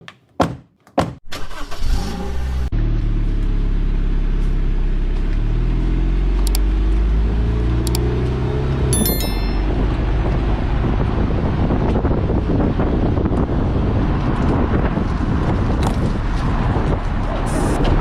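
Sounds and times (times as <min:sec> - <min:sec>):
car engine starting and running: 0:01.3 - 0:08.9.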